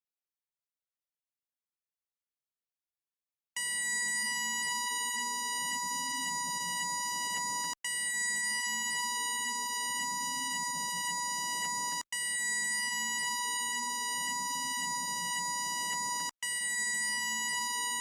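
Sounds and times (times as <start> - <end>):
level crossing electronic buzzer: 3.6 - 18.0.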